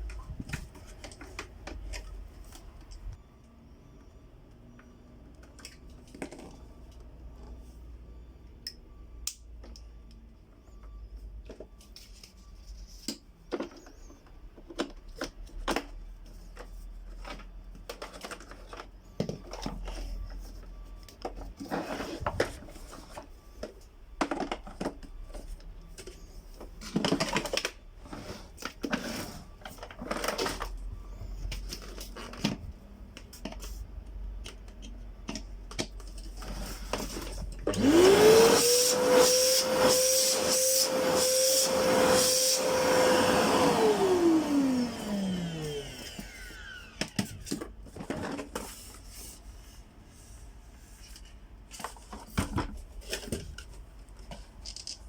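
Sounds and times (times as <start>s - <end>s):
plastic parts clicking and rattling: 0.0s - 3.2s, 13.0s - 37.8s, 47.0s - 49.0s, 51.0s - 55.0s
vacuum motor whine: 36.5s - 47.5s.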